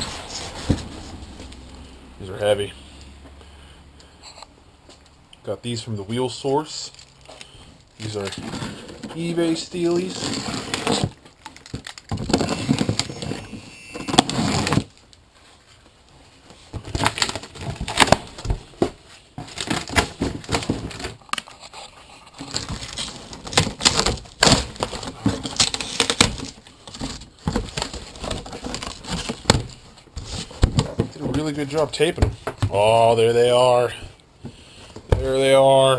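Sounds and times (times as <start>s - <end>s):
cardboard box being torn open: 14.1s - 15.0s.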